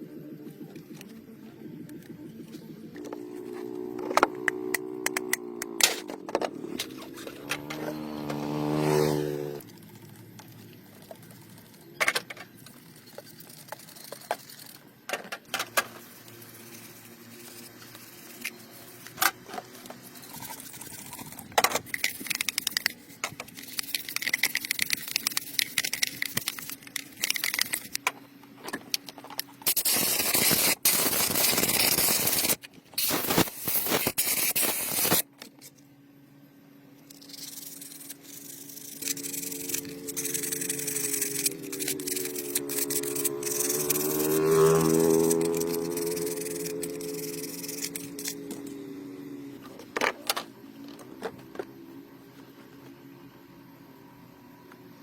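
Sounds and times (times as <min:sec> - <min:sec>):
small motor spinning up: 0:02.9 - 0:10.7, 0:16.0 - 0:28.0, 0:29.6 - 0:35.3, 0:37.0 - 0:50.0
loud steady hiss: 0:29.6 - 0:35.3.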